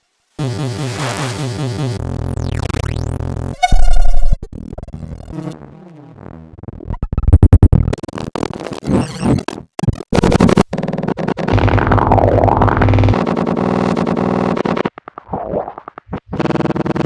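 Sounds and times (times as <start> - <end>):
stuttering glitch pulses: 0.5 - 5.6, 6.5 - 17.0
synthesized electronic sound effects: 2.0 - 5.5, 11.2 - 17.0.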